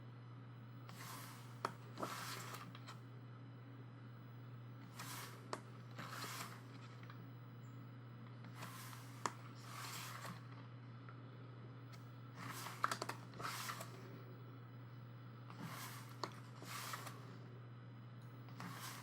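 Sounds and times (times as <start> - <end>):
steady low hum: 0.0 - 19.0
paper pages turning: 0.9 - 3.0, 4.9 - 7.2, 8.5 - 10.6, 12.4 - 14.0, 15.6 - 17.3, 18.5 - 19.0.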